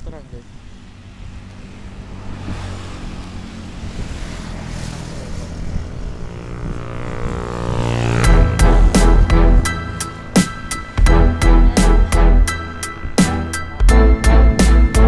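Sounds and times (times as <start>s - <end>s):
motorcycle engine drone: 0.0s - 15.0s
music: 8.2s - 15.0s.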